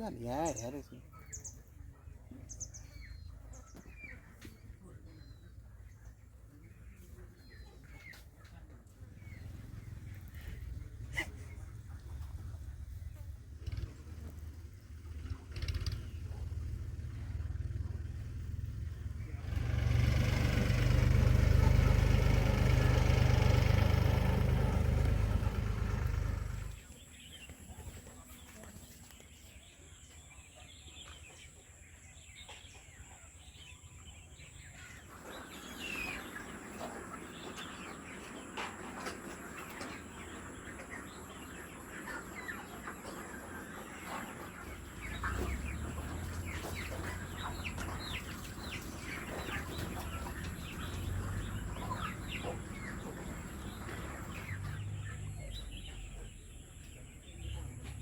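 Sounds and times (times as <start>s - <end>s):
chickens clucking and chirping: 0.0s - 58.0s
loud low rumble with hiss: 12.4s - 26.8s.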